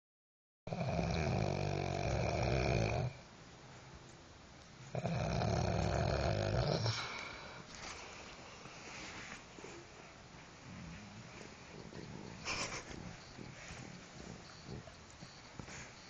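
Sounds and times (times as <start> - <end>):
loud rattling snores: 0.7 - 3.2, 4.9 - 7.0
faint breathing: 6.8 - 16.0.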